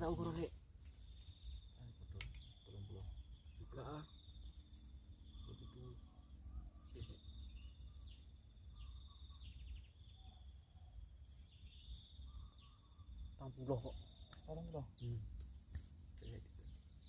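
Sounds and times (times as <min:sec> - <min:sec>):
bird chirps: 0:00.0 - 0:17.0
pulsing insect trill: 0:00.0 - 0:17.0.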